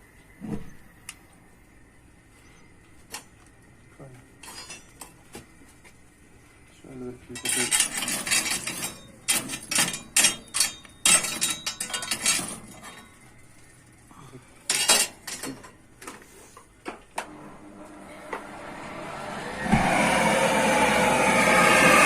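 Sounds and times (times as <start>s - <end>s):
metal objects clanking: 4.4s - 5.2s, 7.3s - 13.2s, 14.7s - 15.8s.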